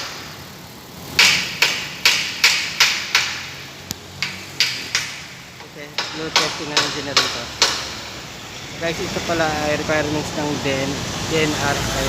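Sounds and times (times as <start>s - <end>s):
hammer strikes on metal: 0.0s - 0.4s, 1.1s - 8.2s.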